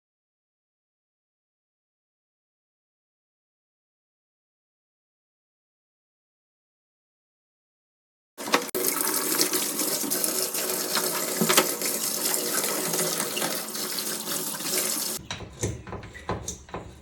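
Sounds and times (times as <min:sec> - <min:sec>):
water running and splashing: 0:08.4 - 0:17.0.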